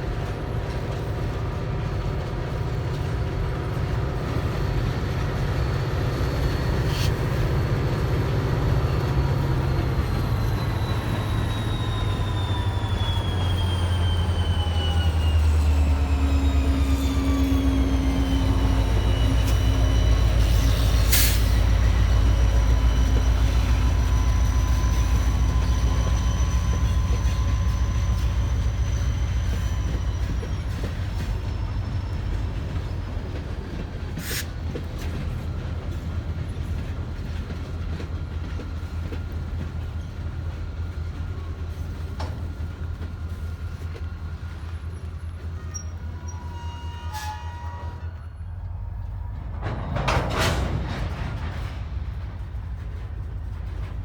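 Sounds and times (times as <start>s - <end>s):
train rumbling by: 0.0s - 54.0s
wheel squeals: 8.8s - 48.6s.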